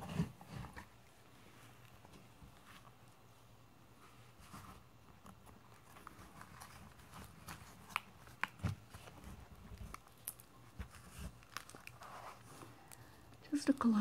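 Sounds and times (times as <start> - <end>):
book pages rustling and clicking: 4.3 - 13.1.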